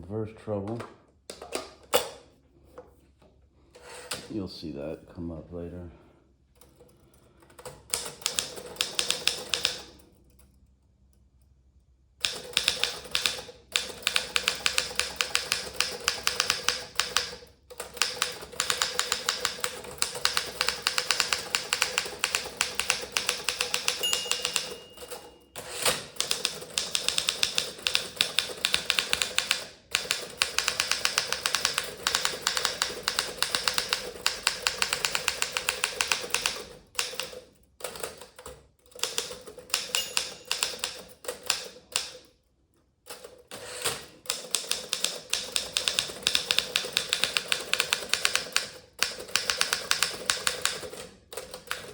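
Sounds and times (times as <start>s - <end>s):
manual typewriter typing: 7.5s - 10.0s, 12.2s - 42.3s, 43.1s - 51.9s.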